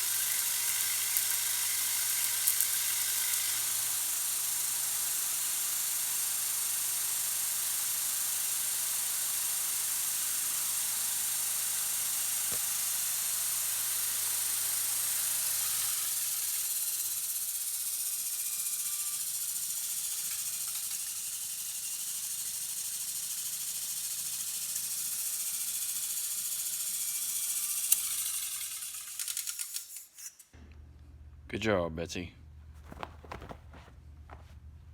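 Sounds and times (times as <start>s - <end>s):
welding arc crackling: 0.0s - 8.8s.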